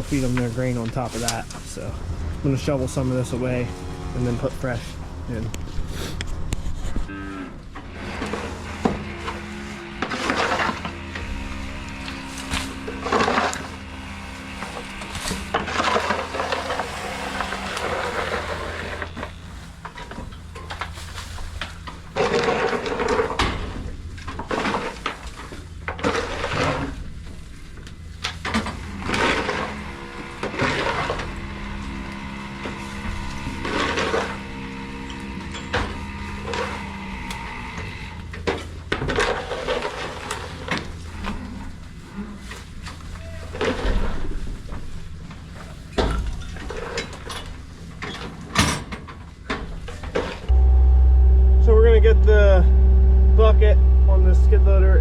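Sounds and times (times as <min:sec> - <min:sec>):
low machine hum: 0:00.0 - 0:39.0, 0:50.4 - 0:55.0
shovel scraping feed bunk: 0:08.0 - 0:19.5, 0:20.6 - 0:23.4.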